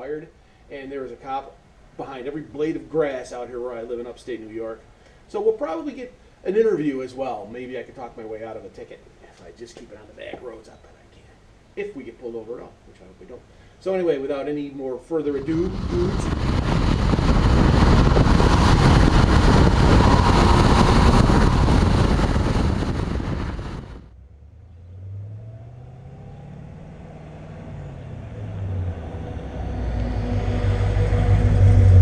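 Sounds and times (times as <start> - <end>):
engine road and wind noise: 15.3 - 32.0
car engine accelerating: 15.4 - 32.0.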